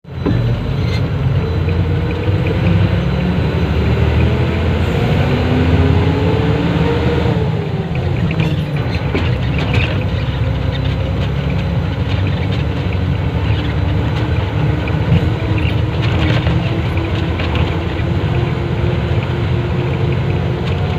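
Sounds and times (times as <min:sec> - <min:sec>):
engine running with heavy rumble: 0:00.0 - 0:20.9.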